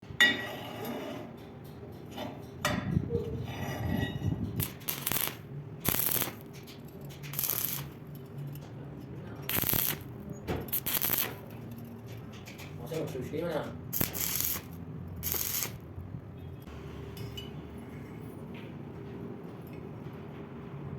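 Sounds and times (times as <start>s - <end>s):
welding arc crackling hiss: 4.6s - 6.6s, 7.2s - 8.0s, 9.5s - 11.4s, 13.9s - 15.8s.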